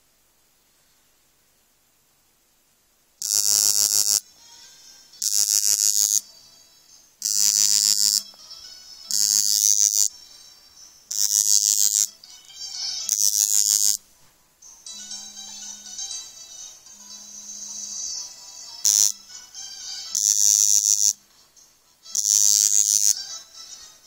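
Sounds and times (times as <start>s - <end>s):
phone vibration rattling buzz: 3.2s - 4.3s, 5.2s - 6.3s, 7.2s - 8.4s, 9.0s - 10.2s, 11.1s - 12.2s, 12.8s - 14.0s, 14.8s - 19.5s, 20.1s - 21.2s, 22.1s - 23.4s.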